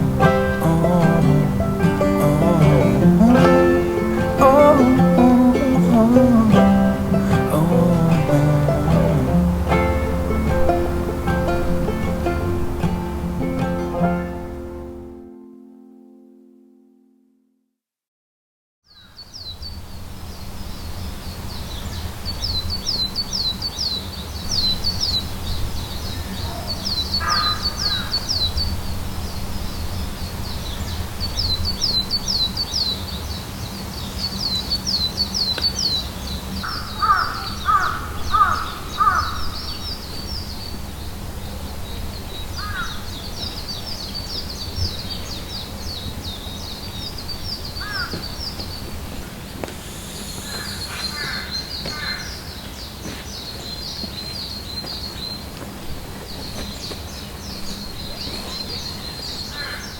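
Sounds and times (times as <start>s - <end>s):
crows cawing: 27.2s - 28.2s, 36.6s - 39.5s, 42.6s - 43.0s, 47.8s - 48.2s, 49.9s - 52.3s
small bird chirping: 49.7s - 52.4s.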